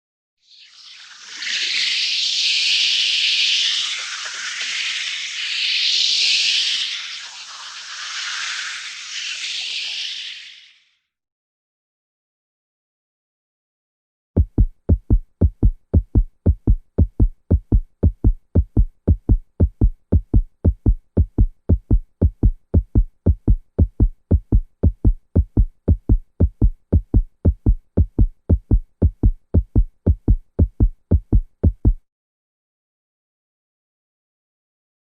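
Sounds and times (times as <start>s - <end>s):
deep thumps: 14.4s - 32.0s.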